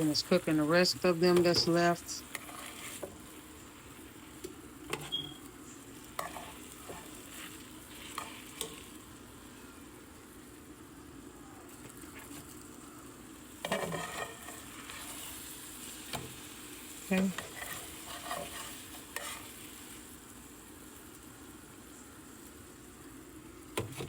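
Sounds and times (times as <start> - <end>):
chicken sizzling in a frying pan: 0.0 - 24.0.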